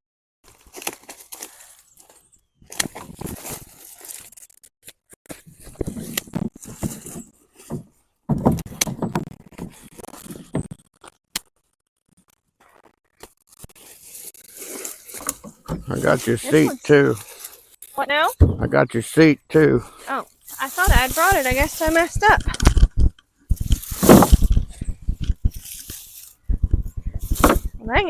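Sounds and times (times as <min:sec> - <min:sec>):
hands rustling in plants and soil: 0:00.5 - 0:04.7, 0:13.4 - 0:19.0, 0:19.6 - 0:28.0.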